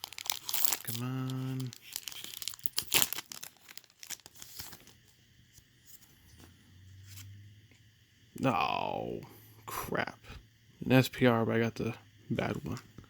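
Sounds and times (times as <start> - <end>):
wrapper tearing and crinkling: 0.0 - 5.0
cards rustling: 0.0 - 5.1.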